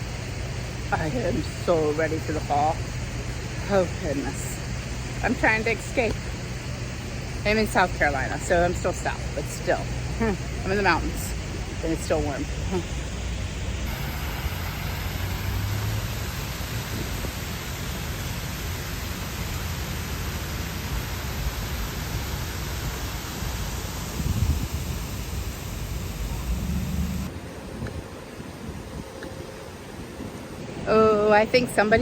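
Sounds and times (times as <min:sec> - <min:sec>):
water rushing over falls: 0:00.0 - 0:27.4
wind rumbling on microphone: 0:08.3 - 0:19.2, 0:20.3 - 0:32.0.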